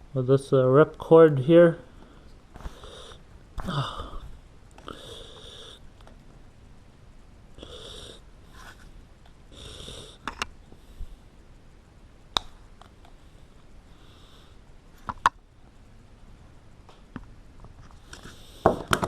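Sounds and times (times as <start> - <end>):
person breathing through nose: 1.9 - 5.8.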